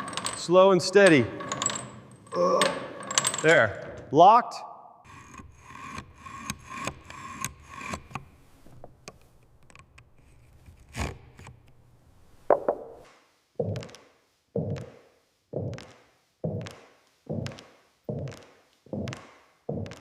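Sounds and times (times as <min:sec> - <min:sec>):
small clicks and scraping: 0:05.1 - 0:11.9.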